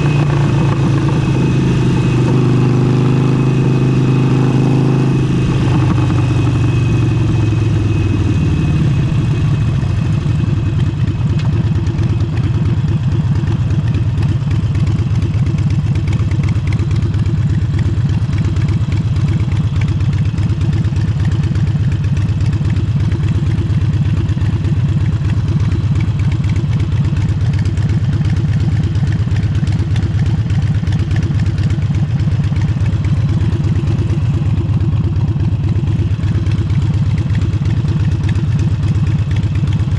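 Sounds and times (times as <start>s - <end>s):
motorcycle engine pulsing: 0.0s - 39.9s.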